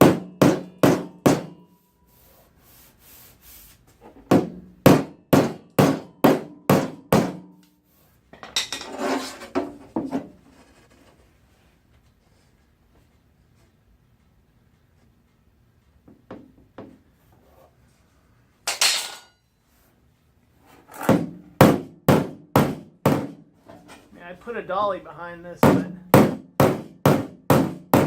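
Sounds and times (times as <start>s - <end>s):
hammer tapping metal panel: 0.0s - 1.6s, 4.3s - 7.6s, 25.6s - 28.0s.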